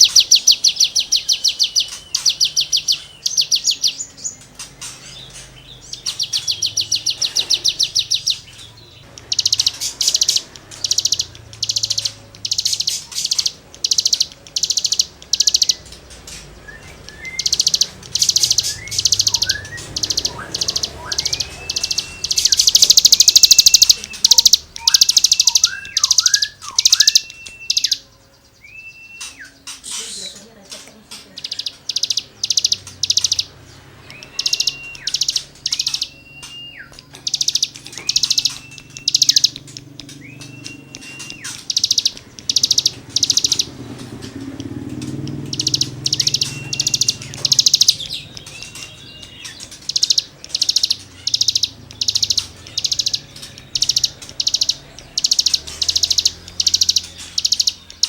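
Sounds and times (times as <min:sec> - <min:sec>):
songbird buzzing trills: 0:00.0 - 0:58.0
bird upslurred whistles: 0:16.6 - 0:30.4, 0:34.1 - 0:39.6.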